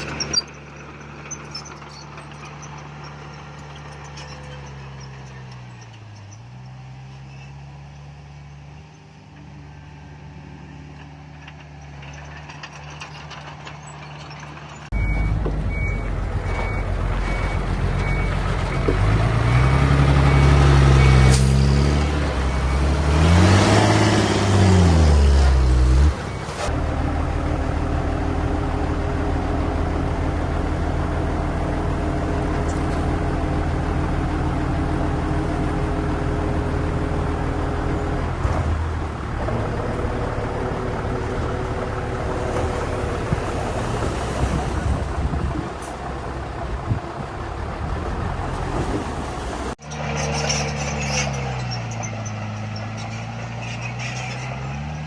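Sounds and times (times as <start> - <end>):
diesel engine revving: 0.0 - 55.0
heavy machinery diesel engines: 0.0 - 55.0
reversing alarm beeping: 14.9 - 21.4.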